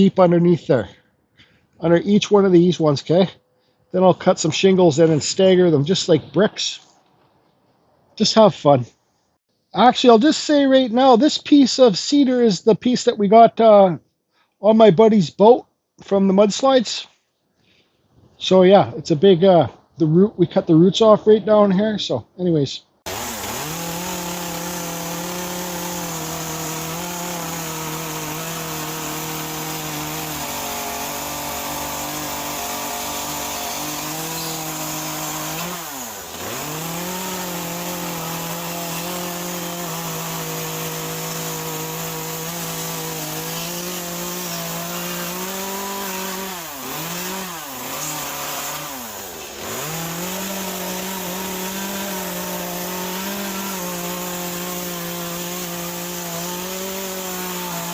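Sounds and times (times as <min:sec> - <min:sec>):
chainsaw cutting wood: 0:23.0 - 0:57.9.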